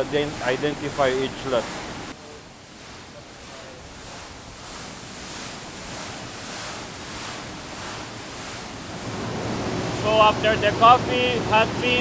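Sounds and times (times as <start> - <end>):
steady rushing noise: 7.1 - 12.0.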